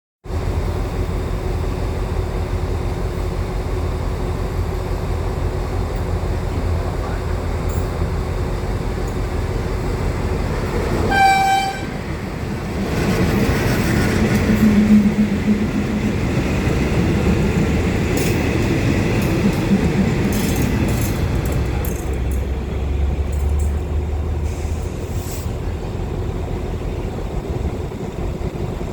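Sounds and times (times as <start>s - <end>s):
train rumbling in: 0.2s - 28.9s
wheels clicking on rails: 5.8s - 25.7s
train horn toot: 11.0s - 12.1s.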